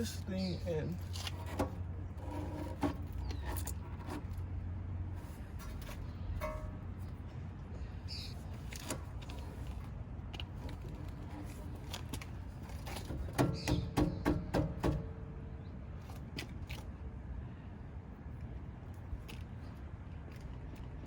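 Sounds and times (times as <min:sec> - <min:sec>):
hand tools clicking and knocking on metal: 0:05.6 - 0:07.2, 0:10.4 - 0:15.3
sharp knocks: 0:13.1 - 0:15.3.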